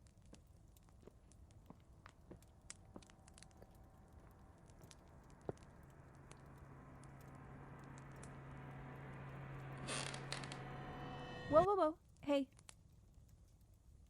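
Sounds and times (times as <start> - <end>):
fireplace crackling and popping: 0.0 - 10.8, 11.7 - 14.0
low steady hum: 1.8 - 12.2.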